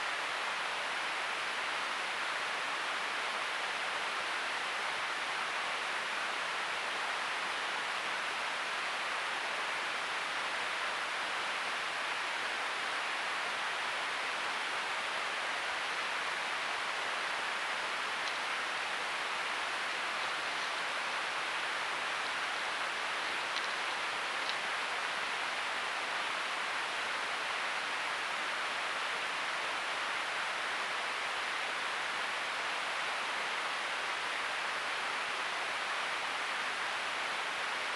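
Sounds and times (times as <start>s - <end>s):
steady hiss: 0.0s - 37.9s
faint ticks: 18.2s - 18.5s, 23.1s - 25.4s.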